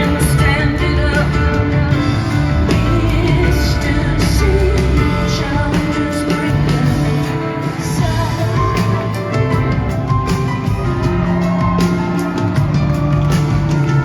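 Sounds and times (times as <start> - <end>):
woman singing: 0.0 - 10.0
live rock band: 0.0 - 14.0.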